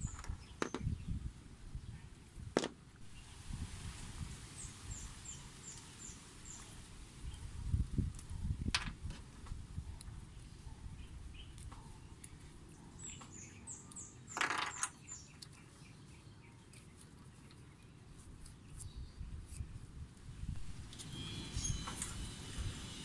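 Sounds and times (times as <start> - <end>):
bird chirping high notes: 20.9 - 22.6.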